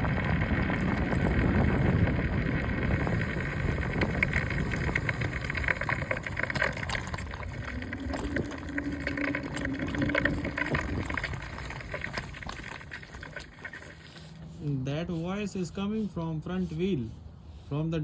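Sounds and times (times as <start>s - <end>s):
wheel rattling clicks: 0.0s - 14.0s
road and wind rumble: 0.0s - 18.0s.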